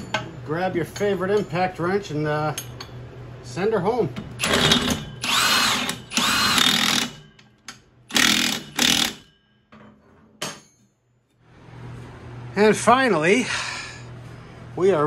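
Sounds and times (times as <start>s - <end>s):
impact wrench bursts: 4.4s - 7.3s, 8.1s - 9.3s.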